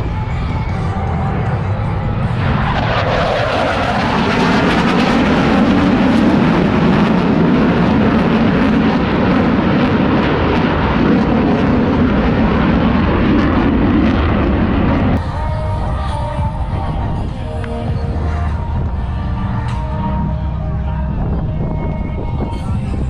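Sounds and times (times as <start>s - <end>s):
jets flying past: 1.2s - 18.7s.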